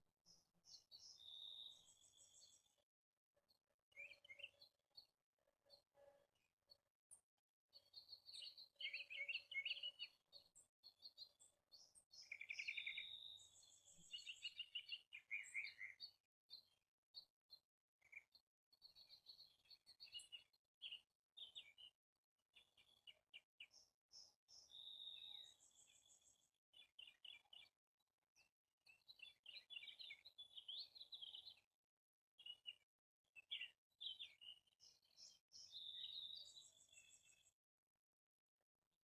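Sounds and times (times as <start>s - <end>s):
faint birds chirping: 0.3s - 2.8s, 7.7s - 21.9s, 28.4s - 31.7s, 33.4s - 37.6s.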